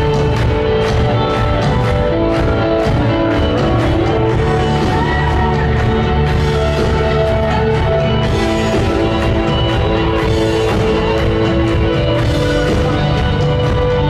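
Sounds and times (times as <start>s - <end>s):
rock band playing live: 0.0s - 14.0s
steady drum beat: 0.0s - 14.0s.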